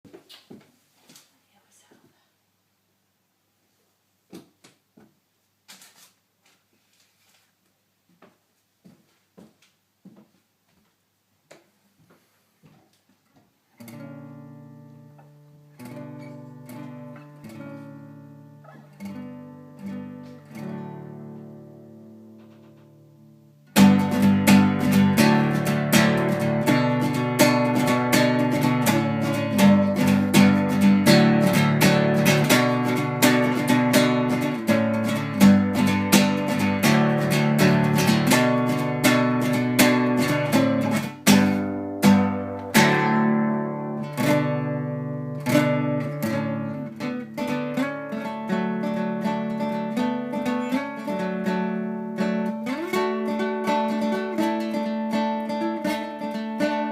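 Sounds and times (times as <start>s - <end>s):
acoustic guitar picking and strumming: 13.7s - 56.9s.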